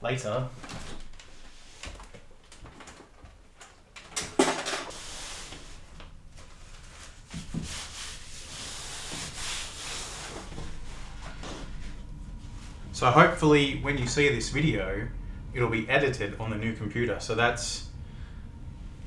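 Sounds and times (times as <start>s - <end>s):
rubbing and sliding: 4.9s - 12.9s.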